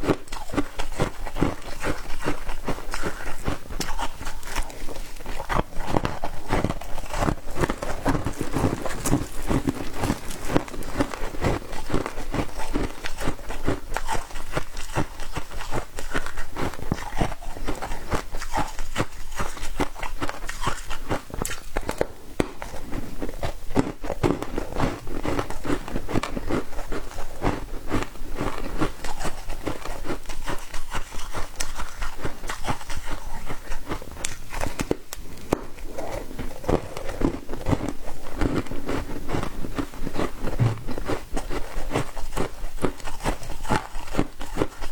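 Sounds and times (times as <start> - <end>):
person crunching ice: 0.0 - 17.1.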